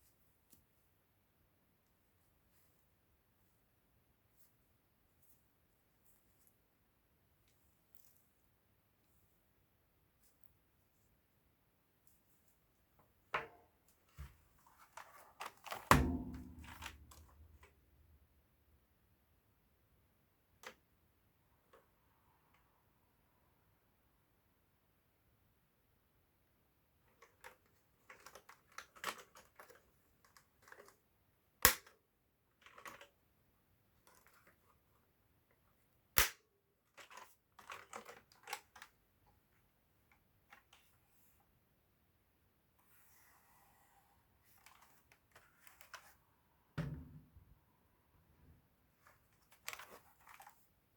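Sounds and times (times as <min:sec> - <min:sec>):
thud with short ring: 0:15.9 - 0:16.8, 0:46.8 - 0:47.4.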